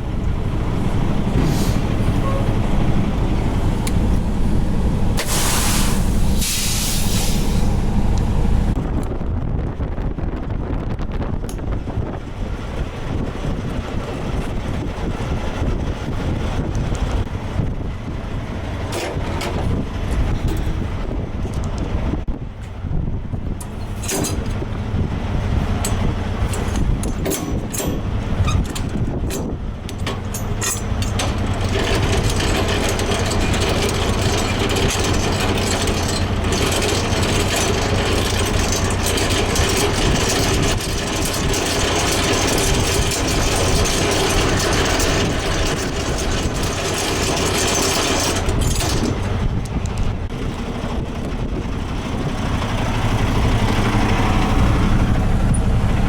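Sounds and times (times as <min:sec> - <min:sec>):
rushing noise: 0:00.0 - 0:08.8
diesel truck engine running: 0:00.0 - 0:56.0.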